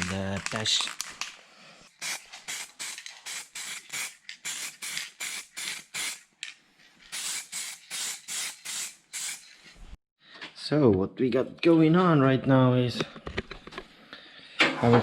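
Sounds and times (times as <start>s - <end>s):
spray paint hissing from can: 2.0s - 6.3s, 7.1s - 9.7s.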